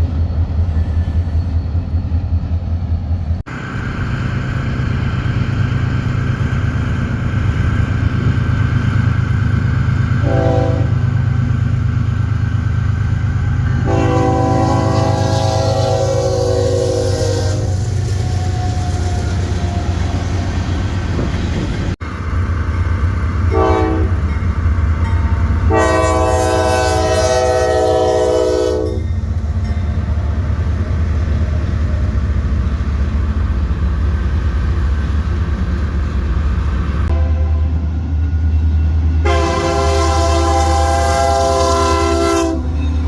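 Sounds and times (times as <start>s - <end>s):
passing train rumble: 0.0s - 43.0s
train horn blasts: 10.2s - 11.4s, 13.6s - 17.9s, 23.5s - 24.3s, 25.2s - 29.1s, 37.1s - 37.8s, 39.2s - 42.8s.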